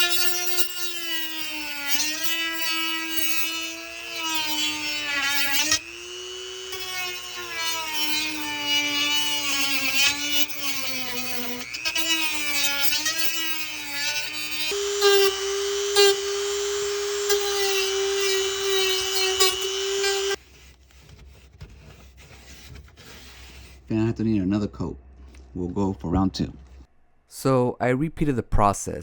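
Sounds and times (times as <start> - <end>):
rotary tool whining: 0.0 - 20.4.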